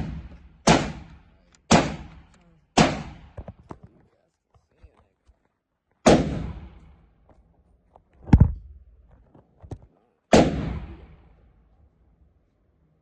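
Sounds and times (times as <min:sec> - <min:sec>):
pistol shots: 0:00.0 - 0:03.4, 0:06.0 - 0:07.0, 0:10.3 - 0:11.3.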